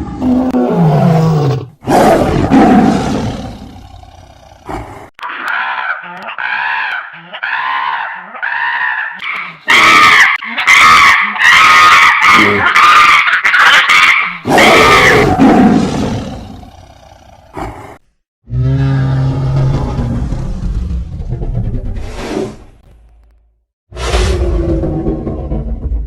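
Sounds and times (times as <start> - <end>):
harsh monster roars: 0.0 - 5.8, 9.6 - 13.2, 14.4 - 22.3, 24.0 - 26.0
monster calls rising and falling: 14.4 - 22.6.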